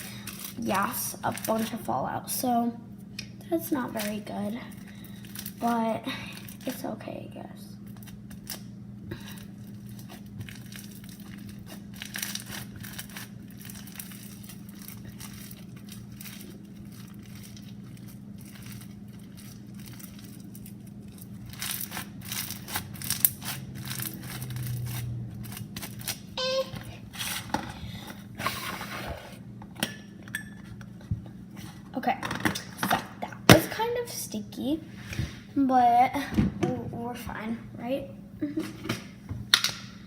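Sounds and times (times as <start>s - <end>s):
foam slime crackling and popping: 0.0s - 2.4s, 7.8s - 26.3s
steady low hum: 0.0s - 40.0s.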